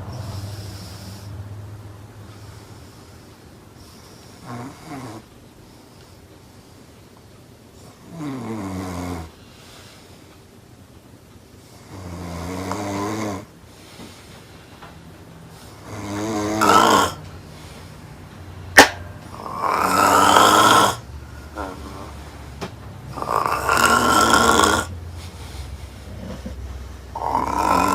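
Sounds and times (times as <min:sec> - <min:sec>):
loud snoring: 0:03.9 - 0:05.3, 0:07.8 - 0:09.4, 0:11.7 - 0:13.5, 0:15.5 - 0:17.8, 0:19.2 - 0:22.4, 0:23.0 - 0:25.0, 0:25.6 - 0:27.9.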